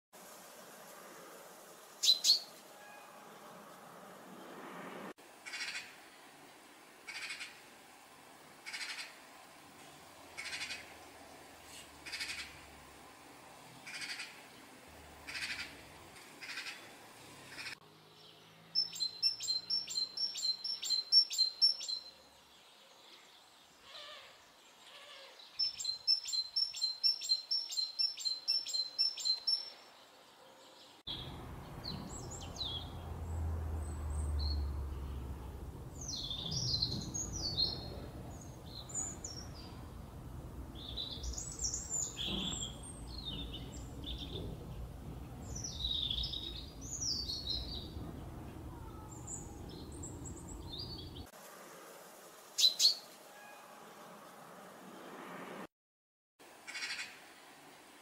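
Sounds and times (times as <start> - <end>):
birds chirping and calling: 2.0 - 2.5, 5.4 - 6.0, 8.6 - 9.2, 10.4 - 11.0, 11.7 - 12.7, 13.9 - 14.6, 15.2 - 16.9, 17.5 - 22.1, 36.0 - 40.0, 40.8 - 51.3.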